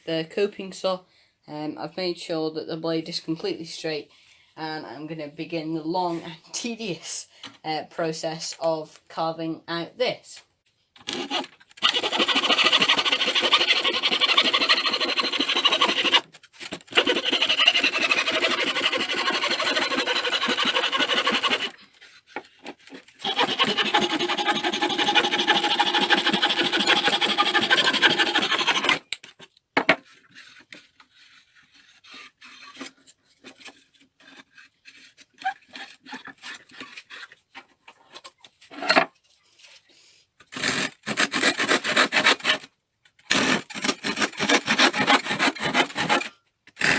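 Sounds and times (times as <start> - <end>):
saw cutting wood: 11.1 - 29.1, 40.6 - 42.7, 43.3 - 46.9.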